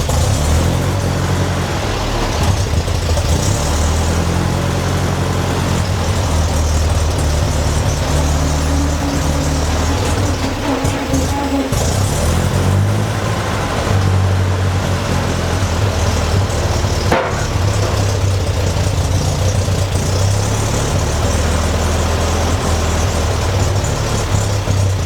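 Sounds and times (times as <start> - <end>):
tractor engine running: 0.0 - 25.0.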